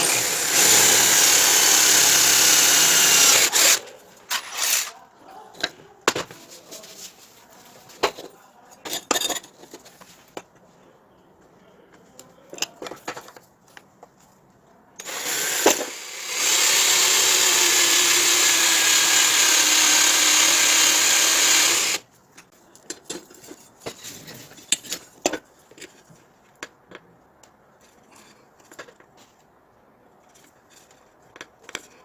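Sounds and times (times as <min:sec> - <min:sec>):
power tool running: 0:00.0 - 0:03.8, 0:15.0 - 0:22.0.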